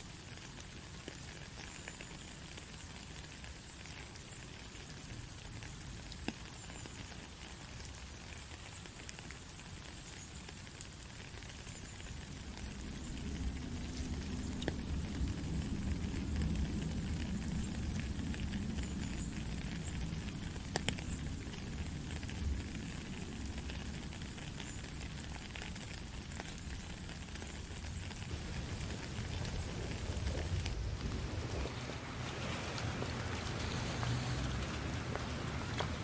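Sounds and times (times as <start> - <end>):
raindrop ticks: 0.0 - 36.0
steady rain hiss: 0.0 - 36.0
low rumble: 28.2 - 35.9.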